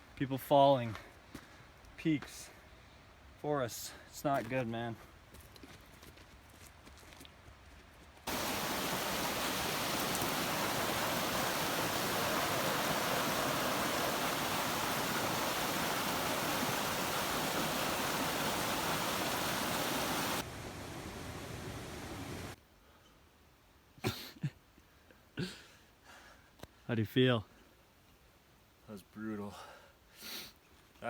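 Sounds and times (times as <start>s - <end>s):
mountain creek rushing: 8.3s - 22.6s.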